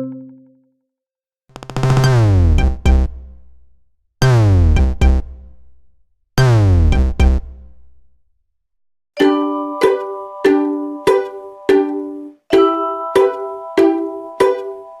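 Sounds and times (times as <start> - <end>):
drum machine hits: 2.5 - 3.3, 4.2 - 5.4, 6.4 - 7.6.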